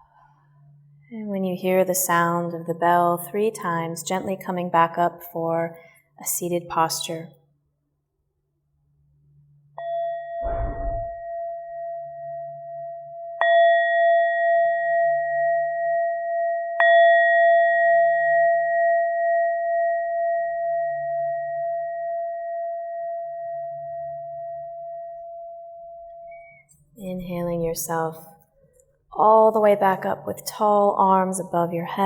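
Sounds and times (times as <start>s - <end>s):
soft low thump: 10.4s - 11.3s.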